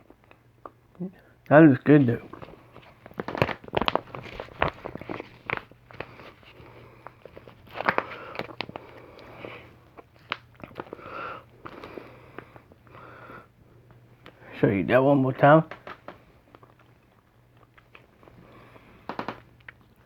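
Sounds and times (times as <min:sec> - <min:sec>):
faint steady hum: 0:00.0 - 0:20.0
foil pouch crinkling: 0:02.0 - 0:12.6.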